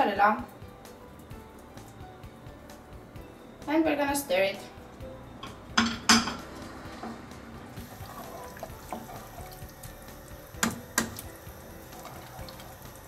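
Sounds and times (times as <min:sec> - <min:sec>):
spoon knocking against pan: 0:05.4 - 0:06.4.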